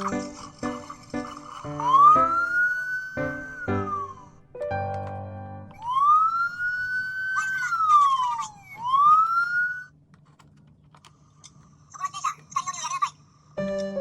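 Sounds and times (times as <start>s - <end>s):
police siren wailing: 1.8s - 4.4s, 5.8s - 9.9s.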